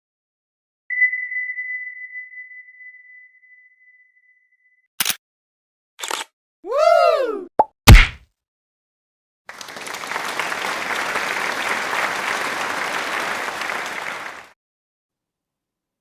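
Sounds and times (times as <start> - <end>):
crowd applause: 9.5 - 14.6.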